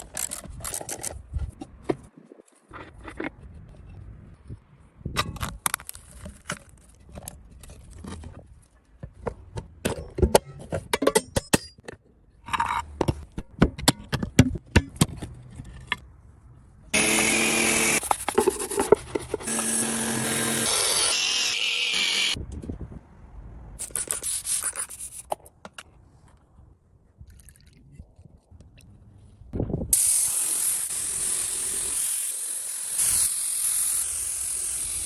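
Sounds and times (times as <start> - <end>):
metal parts clicking and knocking: 0.0 - 1.6
power tool running: 17.0 - 18.0, 19.4 - 22.4.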